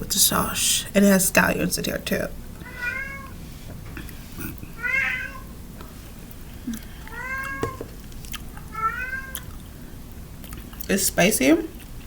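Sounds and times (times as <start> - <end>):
cat meowing: 2.6 - 3.4, 4.8 - 5.5, 7.1 - 7.9, 8.7 - 9.5.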